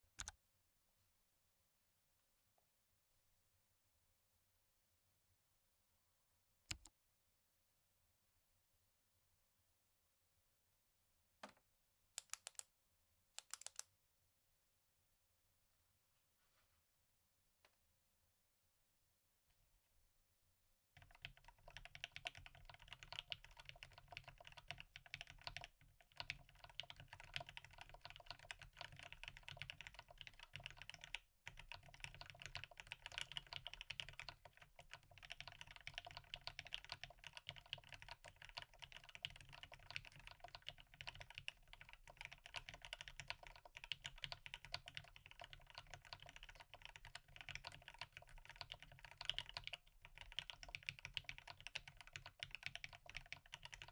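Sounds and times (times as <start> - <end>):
typing on mechanical keyboard: 12.2 - 12.6, 13.4 - 13.9, 21.0 - 53.9.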